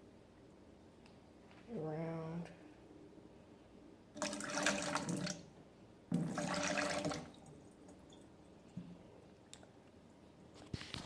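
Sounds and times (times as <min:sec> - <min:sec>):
water running into a bowl: 0:04.2 - 0:05.5, 0:06.1 - 0:08.3.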